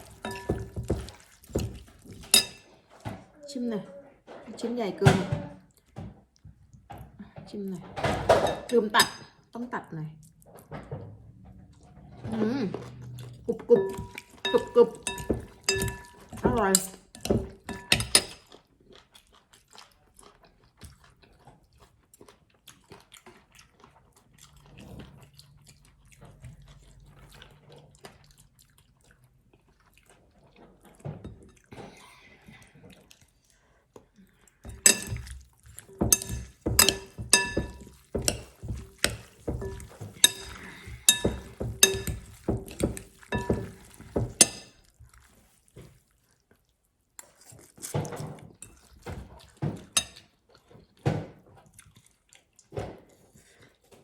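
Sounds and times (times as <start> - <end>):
utensil clinking against bowl: 0.0 - 2.6, 8.3 - 9.3, 13.6 - 18.4, 34.6 - 44.8.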